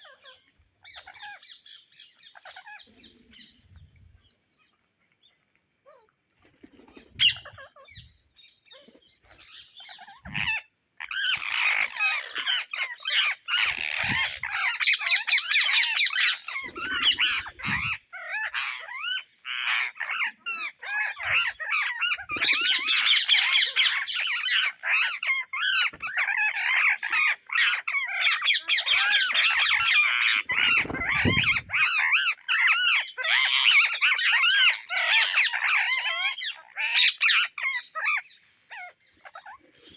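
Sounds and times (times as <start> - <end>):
parakeets chattering and squawking: 0.0 - 3.6, 5.8 - 39.9.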